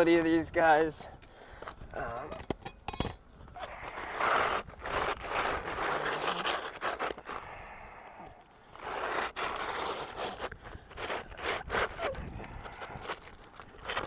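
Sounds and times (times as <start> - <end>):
shingles scraping on roof: 8.7 - 12.0.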